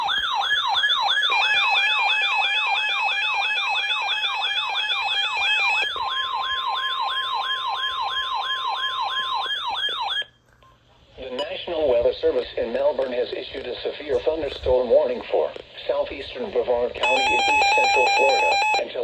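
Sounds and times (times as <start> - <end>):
steady alert tone: 17.0 - 18.8.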